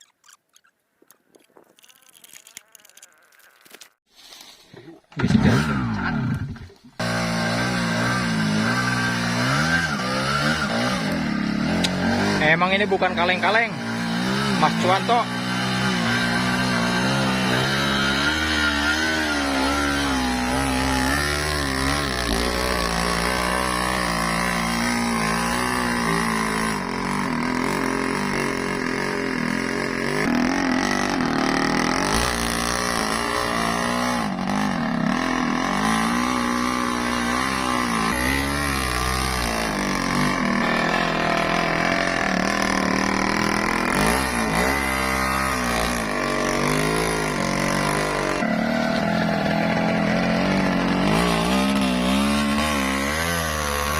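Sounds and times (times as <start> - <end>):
two-stroke motorcycle engine revving: 5.2 - 53.9.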